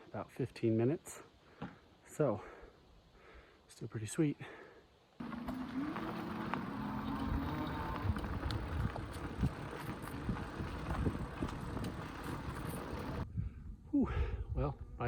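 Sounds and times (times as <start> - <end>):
electric bike motor whine: 5.2 - 13.2
steady rumble: 5.2 - 13.3.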